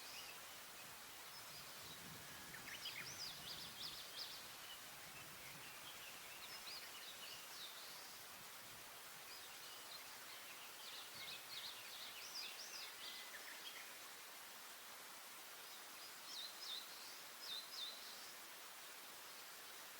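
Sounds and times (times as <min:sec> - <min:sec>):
faint steady hiss: 0:00.0 - 0:19.9
warbler singing: 0:01.3 - 0:08.2, 0:09.3 - 0:14.0, 0:15.6 - 0:18.4.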